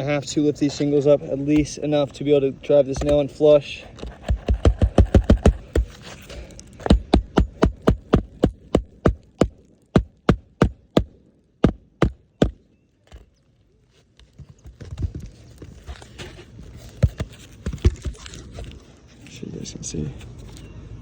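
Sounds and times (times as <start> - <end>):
hammer striking roofing nails: 2.9 - 3.3, 4.0 - 6.0, 6.8 - 13.2.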